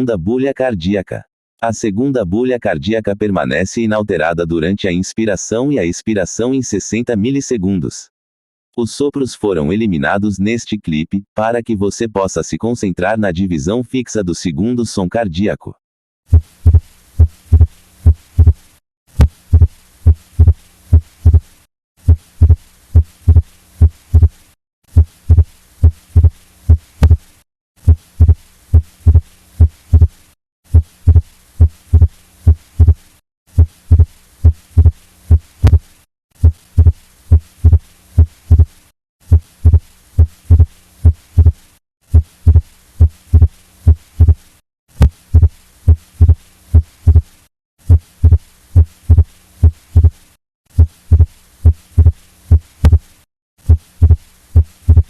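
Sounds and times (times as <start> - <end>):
heartbeat through stethoscope: 16.3 - 18.6, 19.2 - 24.3, 24.9 - 27.2, 27.8 - 35.8, 36.4 - 38.7, 39.3 - 44.4, 45.0 - 50.2, 50.8 - 53.0, 53.6 - 55.0.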